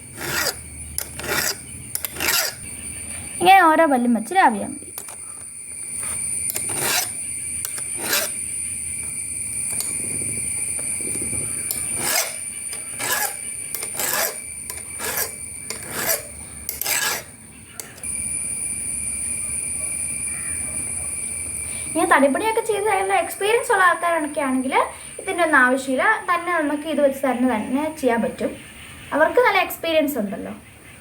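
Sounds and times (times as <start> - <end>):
file rasping on chainsaw chain: 0.0 - 2.7, 6.0 - 8.4, 11.7 - 18.0.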